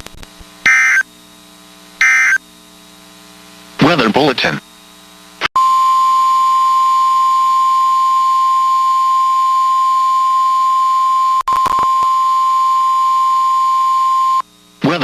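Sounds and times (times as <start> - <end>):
crackle: 0.0 - 0.6, 11.3 - 14.6
steady warning alarm tone: 0.7 - 1.1, 2.0 - 2.4, 5.6 - 14.5.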